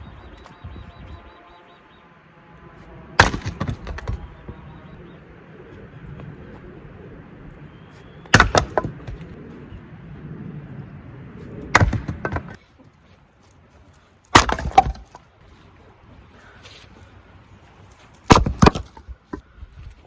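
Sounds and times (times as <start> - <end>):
axe striking firewood: 3.2 - 4.2, 8.3 - 9.3, 11.7 - 12.6, 14.3 - 15.2, 18.3 - 19.1
wood cracking apart: 3.2 - 4.3, 8.3 - 9.3, 14.3 - 15.2, 18.2 - 19.1.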